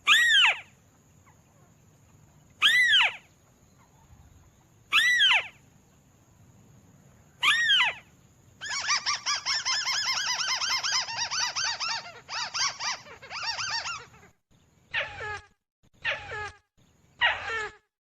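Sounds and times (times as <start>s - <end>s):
crake calling: 7.4s - 16.6s.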